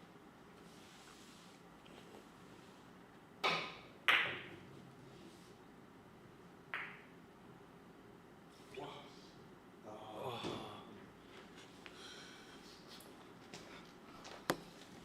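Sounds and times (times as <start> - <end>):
billiard balls clacking: 3.4 - 4.7, 6.7 - 7.2.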